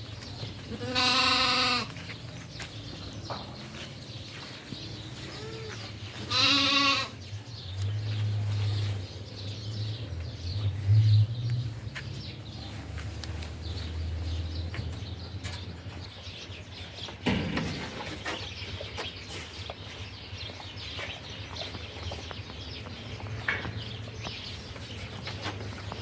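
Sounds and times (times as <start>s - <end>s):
goat bleating: 0.6s - 1.9s, 5.3s - 7.2s.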